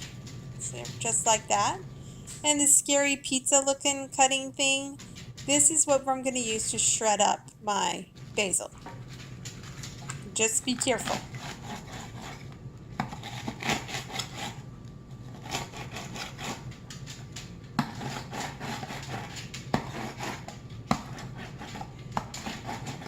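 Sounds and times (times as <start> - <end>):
herb cutter scraping: 10.4 - 14.6, 15.2 - 16.8, 17.8 - 23.0.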